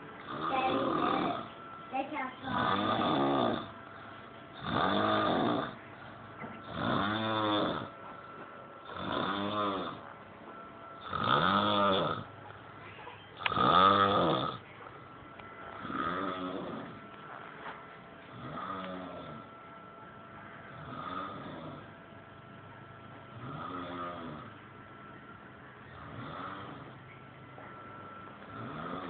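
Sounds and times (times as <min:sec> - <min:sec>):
snoring: 0:00.2 - 0:01.5, 0:02.4 - 0:03.7, 0:04.6 - 0:05.8, 0:06.6 - 0:07.9, 0:08.8 - 0:10.0, 0:11.0 - 0:12.3, 0:13.4 - 0:14.6, 0:15.8 - 0:17.0, 0:18.3 - 0:19.5, 0:20.7 - 0:21.9, 0:23.3 - 0:24.6, 0:25.9 - 0:27.0, 0:28.5 - 0:29.0.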